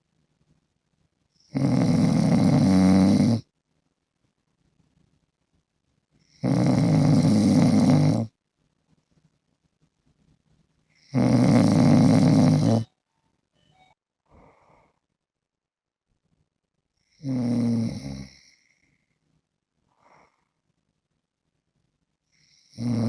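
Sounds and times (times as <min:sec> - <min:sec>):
man snoring: 0:01.4 - 0:03.5, 0:06.3 - 0:08.3, 0:11.0 - 0:12.9, 0:17.2 - 0:18.6, 0:22.4 - 0:23.0.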